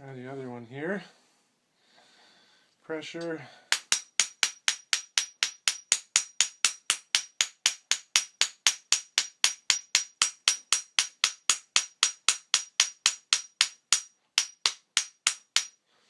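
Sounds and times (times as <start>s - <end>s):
hammer rapping metal padlock: 3.7s - 15.8s.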